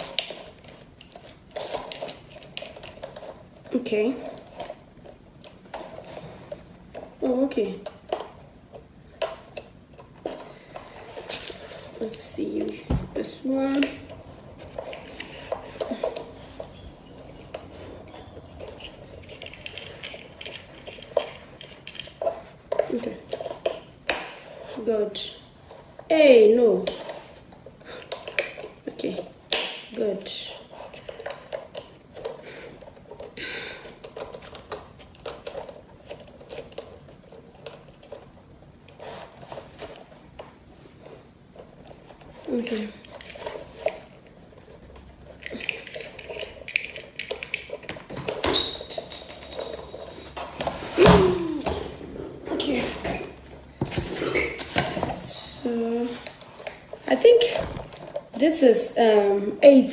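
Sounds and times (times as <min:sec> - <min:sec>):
plastic parts clicking and tapping: 0:42.7 - 0:49.8.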